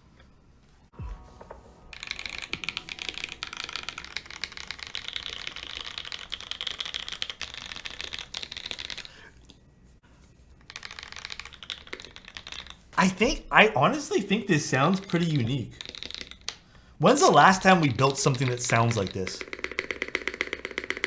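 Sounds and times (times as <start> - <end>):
mechanical keyboard clatter: 2.0 - 9.1, 10.7 - 12.8, 15.0 - 16.5, 18.0 - 21.0.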